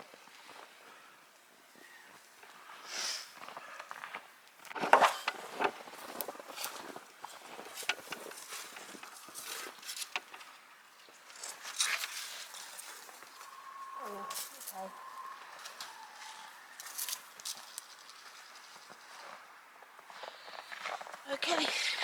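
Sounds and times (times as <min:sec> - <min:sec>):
footsteps crunching in snow: 0:11.4 - 0:21.8.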